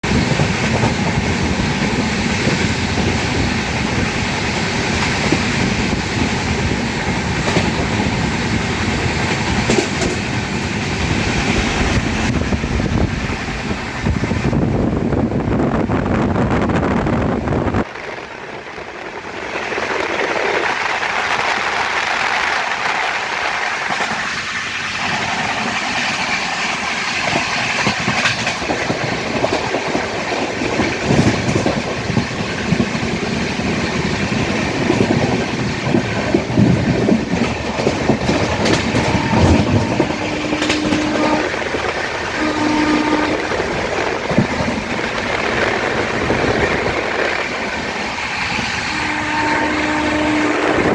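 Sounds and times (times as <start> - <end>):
wheels clacking over rail joints: 0.0 - 14.0, 19.4 - 50.9
train rushing: 0.0 - 50.9
short horn blasts: 39.1 - 41.6, 42.4 - 43.4, 48.9 - 50.8.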